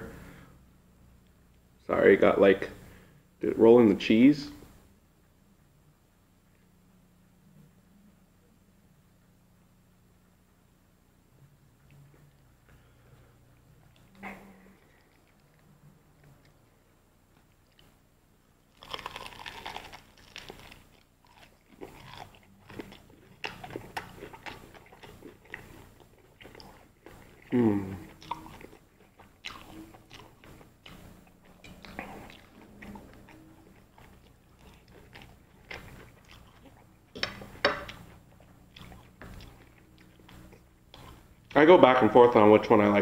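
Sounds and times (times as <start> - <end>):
crunching and chewing fried chicken: 12.2 - 18.0, 18.6 - 41.6.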